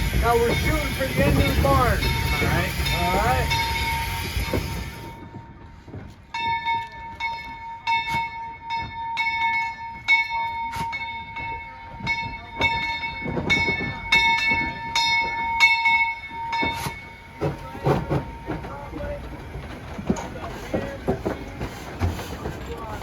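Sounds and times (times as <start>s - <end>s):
locomotive running noise: 0.0s - 7.5s, 10.7s - 23.0s
locomotive bell ringing: 0.0s - 21.7s.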